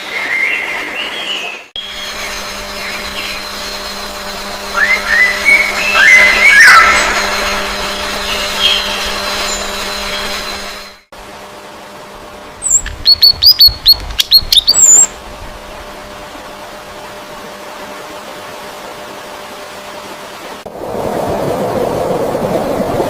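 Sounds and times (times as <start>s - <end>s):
mechanical hum with high whine: 0.0s - 23.0s
bird chirps: 4.7s - 10.5s, 12.6s - 15.1s.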